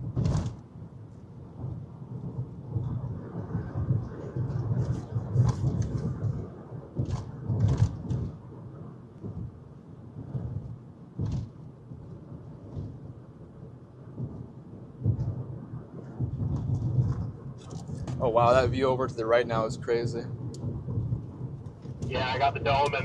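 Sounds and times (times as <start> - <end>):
road and wind noise in vehicle: 0.0 - 23.0
sharp knocks: 0.2 - 0.6, 11.2 - 11.6.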